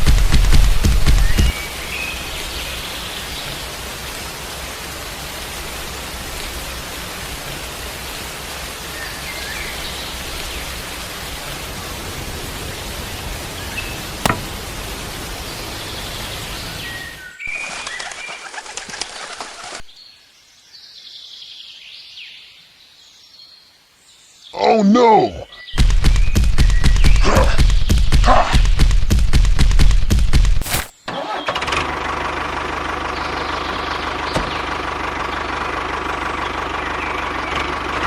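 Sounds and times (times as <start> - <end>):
sharp click: 14.2 - 14.7.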